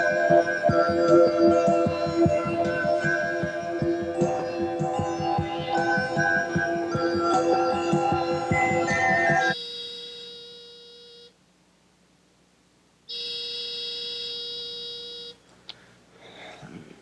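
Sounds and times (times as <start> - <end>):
telephone ringing: 0.0 - 11.3, 13.1 - 15.4.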